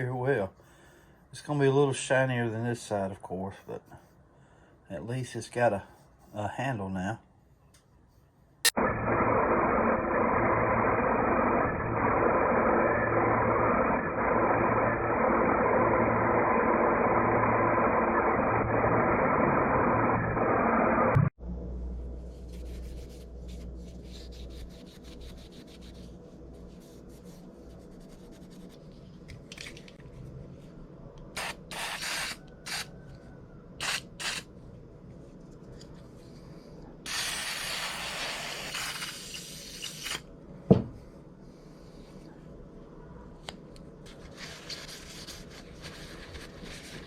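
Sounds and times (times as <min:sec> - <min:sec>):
hiss: 0:37.1 - 0:39.8.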